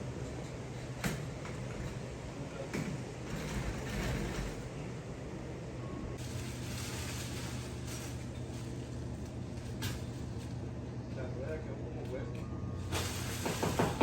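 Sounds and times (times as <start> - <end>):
loud work noise: 11.6 - 14.0.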